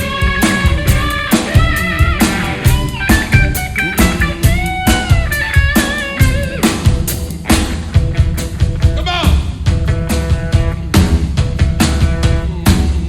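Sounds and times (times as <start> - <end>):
lead guitar bending notes: 0.0 - 9.0
steady drum beat: 0.0 - 13.0.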